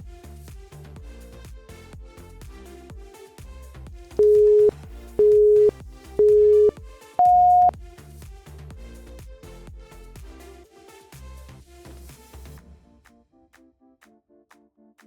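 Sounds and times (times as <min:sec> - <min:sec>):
countdown timer beeps: 0:04.2 - 0:07.7
electronic background music: 0:04.2 - 0:07.7.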